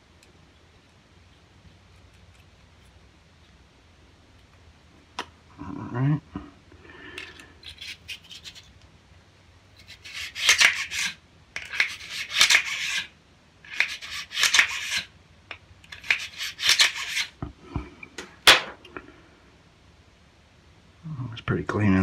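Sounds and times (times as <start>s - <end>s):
bore brush rasping in barrel: 9.8s - 13.1s, 13.7s - 15.1s, 15.9s - 17.4s.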